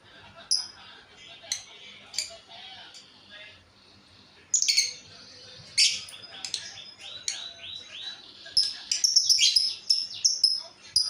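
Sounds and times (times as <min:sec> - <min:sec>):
lovebird chirping: 0:04.5 - 0:05.1, 0:05.7 - 0:11.0.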